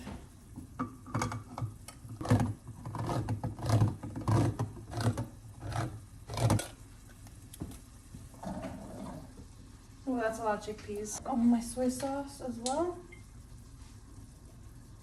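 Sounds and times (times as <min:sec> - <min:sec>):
hand can opener cranking: 0:02.2 - 0:06.7.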